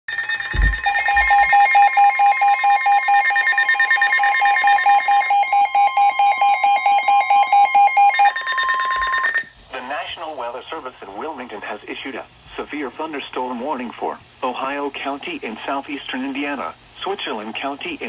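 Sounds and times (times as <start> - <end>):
rapid pulsing beeps: 0.1 - 9.5
steady high alert tone: 0.1 - 9.5.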